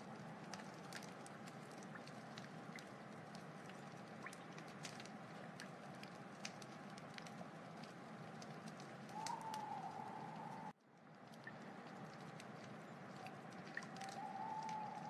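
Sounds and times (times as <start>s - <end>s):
wood fire crackling: 0.0s - 15.0s
thin whistling tone: 9.1s - 10.7s, 13.9s - 15.0s.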